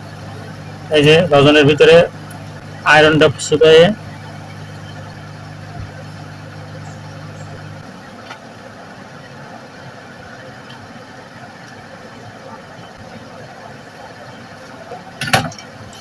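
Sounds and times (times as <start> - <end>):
low electrical hum: 0.0 - 8.3.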